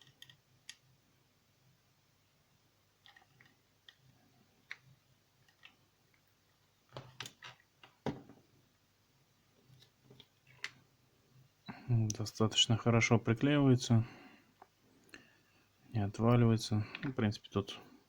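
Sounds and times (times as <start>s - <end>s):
small plastic parts clicking: 0.0s - 0.9s, 3.0s - 6.2s.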